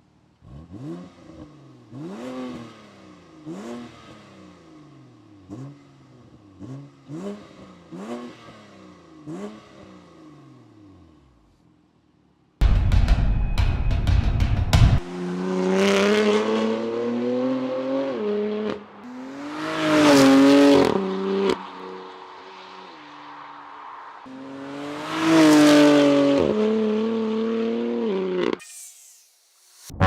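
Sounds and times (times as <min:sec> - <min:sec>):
car engine revving hard: 0:15.0 - 0:21.6.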